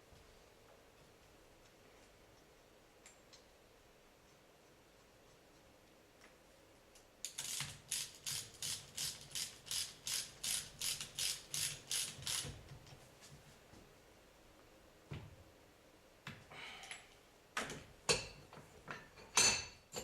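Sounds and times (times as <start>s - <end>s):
hand tool clicking strokes: 7.2s - 12.5s.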